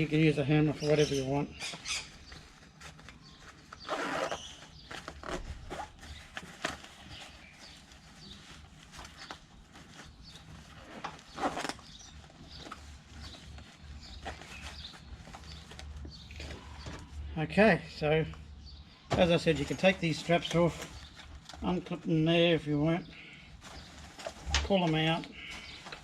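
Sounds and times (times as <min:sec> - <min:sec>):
fabric bag rustling: 0:02.1 - 0:17.2, 0:23.6 - 0:26.0.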